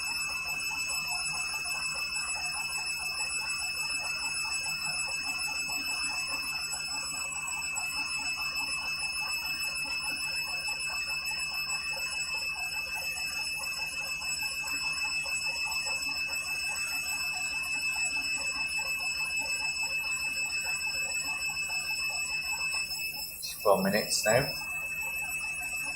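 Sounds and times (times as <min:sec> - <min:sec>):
high whine: 0:23.1 - 0:24.6.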